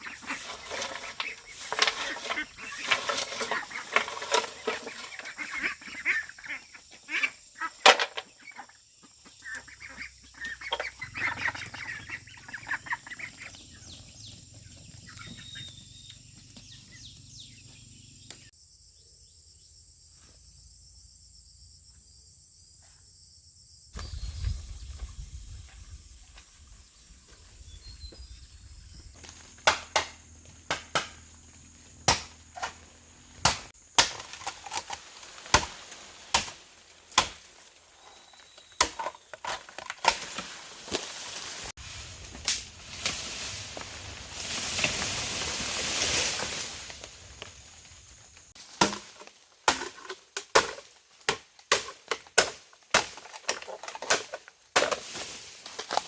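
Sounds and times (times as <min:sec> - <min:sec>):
tool striking bamboo: 0:29.6 - 0:31.4, 0:32.0 - 0:32.8, 0:33.4 - 0:37.5, 0:48.7 - 0:55.2.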